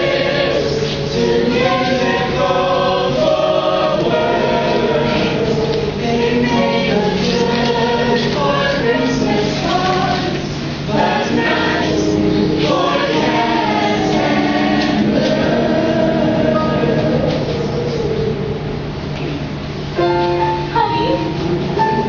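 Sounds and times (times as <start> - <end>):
chorus of young voices singing: 0.0 - 18.6
instrumental accompaniment: 20.0 - 22.0.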